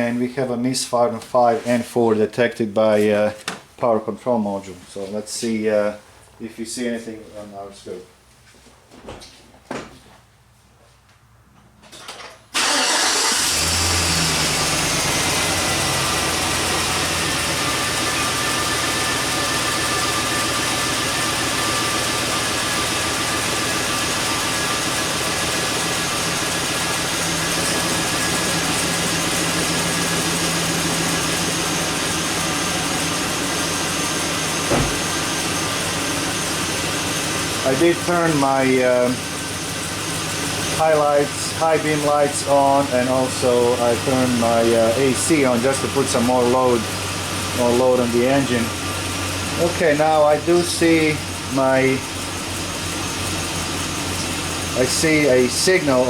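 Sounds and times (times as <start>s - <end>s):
truck engine starting and idling: 12.0s - 56.0s
short knock: 34.7s - 35.1s.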